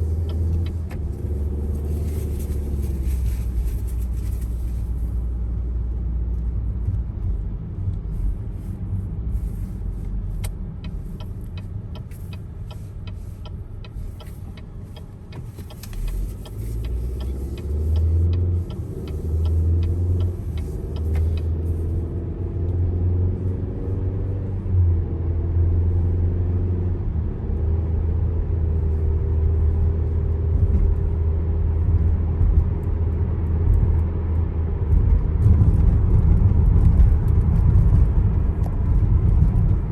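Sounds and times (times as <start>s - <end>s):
car engine and tyres rumbling: 0.0s - 39.9s
light ticks: 10.4s - 21.8s.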